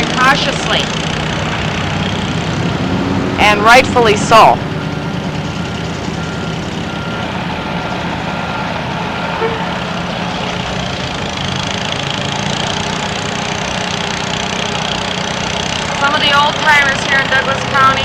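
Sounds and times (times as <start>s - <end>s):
traffic engines rumbling: 0.0s - 18.0s
reversing beeper: 4.2s - 11.0s.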